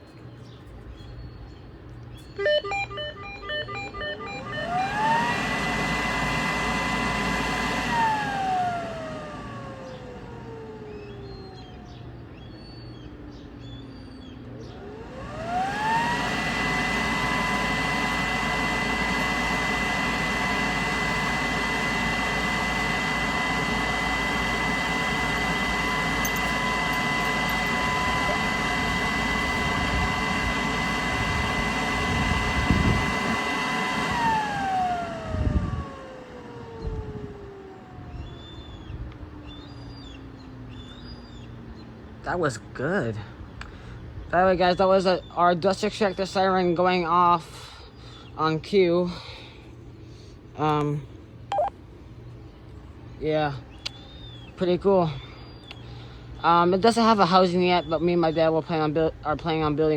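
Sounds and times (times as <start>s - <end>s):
dust extractor siren whine: 2.2s - 42.4s, 51.5s - 58.7s
short beeps: 2.4s - 4.7s, 51.5s - 51.8s.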